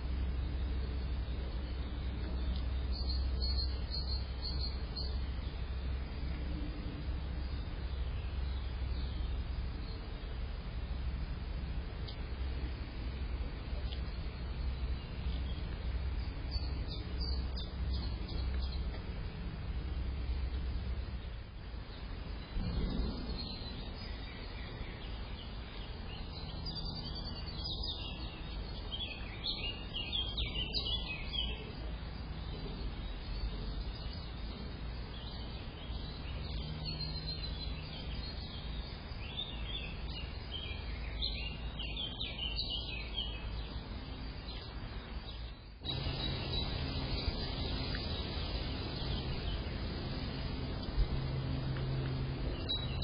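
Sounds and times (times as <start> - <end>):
small birds chirping: 0.0 - 10.4, 12.1 - 19.1, 19.8 - 53.0
background hiss and hum: 0.0 - 53.0.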